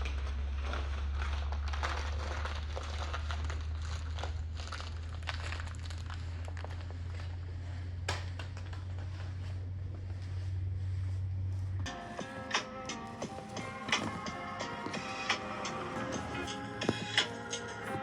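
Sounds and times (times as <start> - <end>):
crinkling: 0.0 - 18.0
steady low hum: 4.4 - 18.0.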